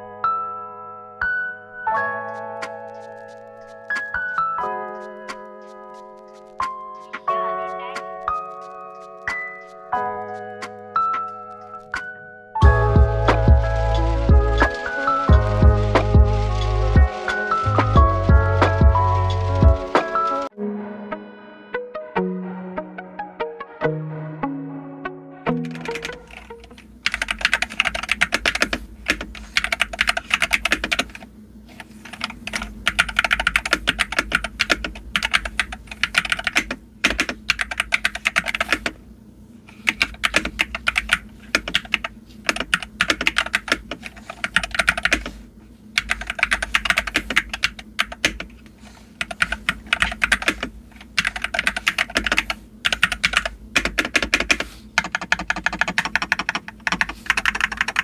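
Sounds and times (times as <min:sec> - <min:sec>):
mechanical keyboard key clacks: 0:32.1 - 0:39.0, 0:39.9 - 0:45.3, 0:49.2 - 0:58.0.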